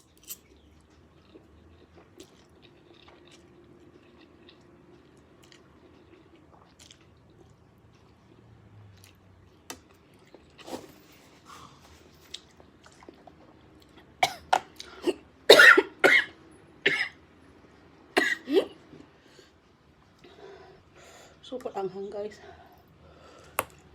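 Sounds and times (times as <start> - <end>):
woman coughing: 14.2 - 16.3, 16.9 - 17.2, 18.2 - 18.8.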